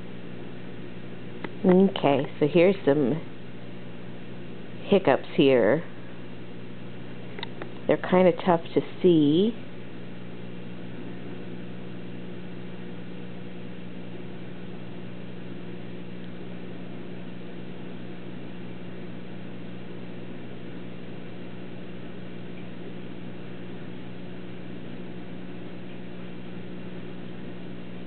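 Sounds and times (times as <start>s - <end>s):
low electrical hum with hiss: 0.0s - 28.0s.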